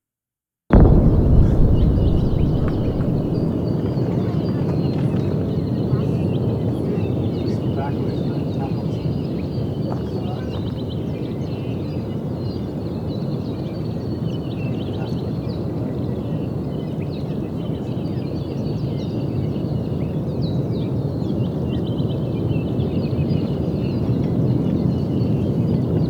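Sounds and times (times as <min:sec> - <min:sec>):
deep rumble of lava jetting: 0:00.7 - 0:04.1.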